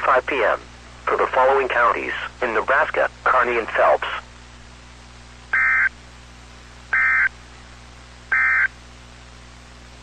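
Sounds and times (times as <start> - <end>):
faint steady hum: 0.0 - 10.0
raspy electronic data bursts: 5.5 - 5.9, 6.9 - 7.3, 8.3 - 8.7.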